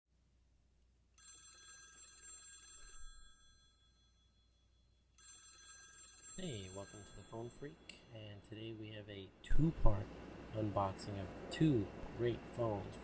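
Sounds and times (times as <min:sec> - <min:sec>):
telephone ringing: 0:01.2 - 0:08.1.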